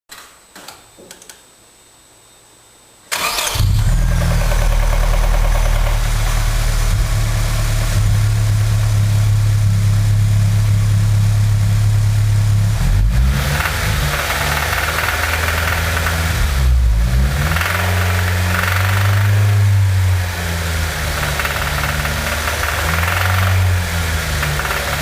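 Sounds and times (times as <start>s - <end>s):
engine cranking: 3.1s - 5.9s
engine idling: 3.2s - 12.8s, 20.8s - 25.0s.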